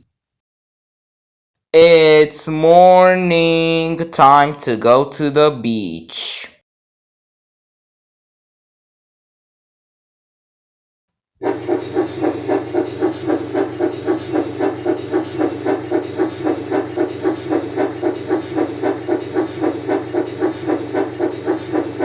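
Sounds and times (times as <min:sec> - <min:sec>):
steam locomotive chuffing: 0:01.8 - 0:05.4, 0:11.4 - 0:22.0.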